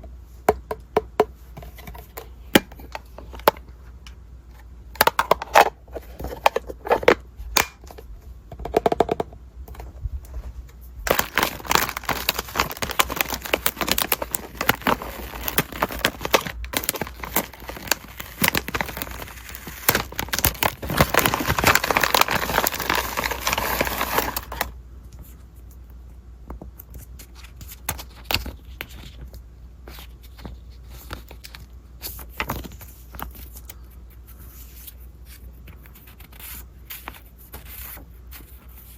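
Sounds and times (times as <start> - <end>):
packaging crinkling and tearing: 11.1 - 24.7
packaging rustling: 11.1 - 24.7.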